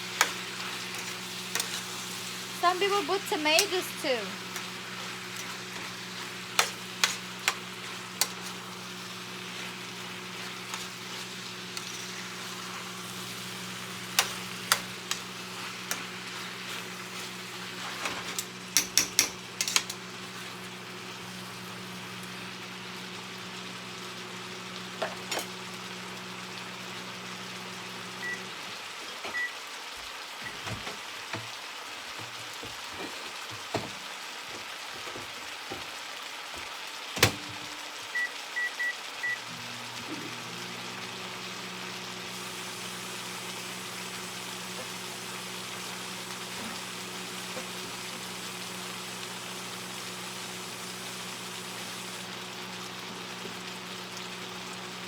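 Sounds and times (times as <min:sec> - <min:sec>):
low appliance hum: 0:00.0 - 0:29.5, 0:30.4 - 0:55.0
chicken sizzling in a frying pan: 0:00.0 - 0:55.0
utensil clattering on pan: 0:18.0 - 0:20.0.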